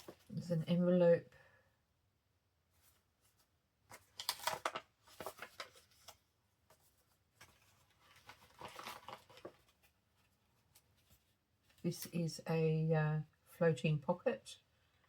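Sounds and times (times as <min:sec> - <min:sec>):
paper rustling and crinkling: 0:00.0 - 0:00.4, 0:02.8 - 0:12.1.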